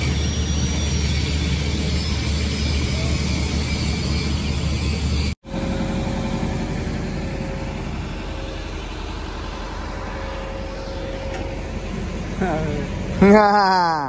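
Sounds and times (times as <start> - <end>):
engine and traffic rumble: 0.0 - 14.0
thin steady whine: 0.0 - 14.0.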